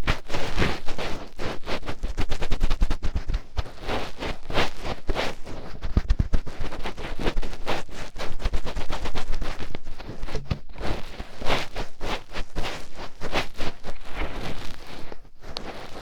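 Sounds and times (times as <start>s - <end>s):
fingertip scratching in ear: 0.0s - 16.0s.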